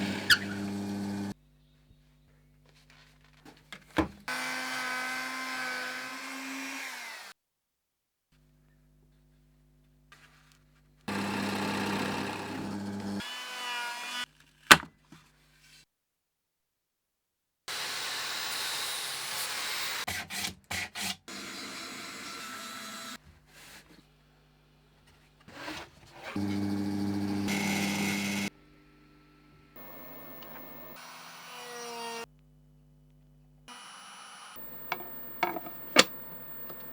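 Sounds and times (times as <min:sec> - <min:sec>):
power tools working wood: 0:00.0 - 0:01.4, 0:04.3 - 0:07.3, 0:11.1 - 0:14.2, 0:26.3 - 0:28.5, 0:29.2 - 0:32.3, 0:33.7 - 0:36.9.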